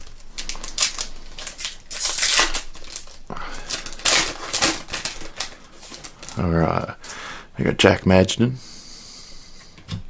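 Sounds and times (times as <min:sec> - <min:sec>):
card pack wrapper crinkling: 0:00.0 - 0:06.8.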